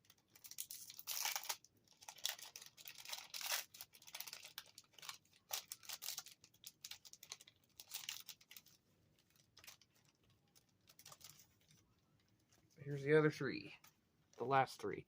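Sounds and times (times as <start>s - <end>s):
foil wrapper crinkling and tearing: 0.0s - 11.8s.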